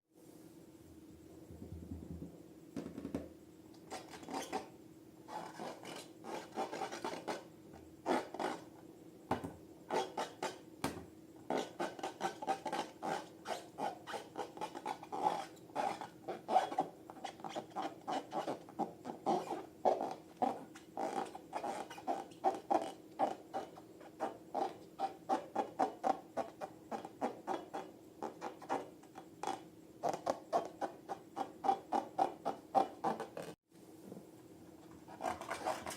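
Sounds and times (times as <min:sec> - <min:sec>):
faint steady hum: 0:00.2 - 0:35.9.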